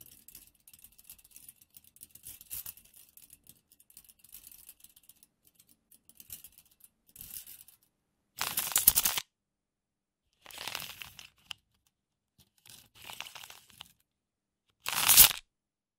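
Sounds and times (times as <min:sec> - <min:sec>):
tape measure blade rattling: 0:08.4 - 0:09.2, 0:14.9 - 0:15.4
tape measure click: 0:08.4 - 0:09.2, 0:14.9 - 0:15.4.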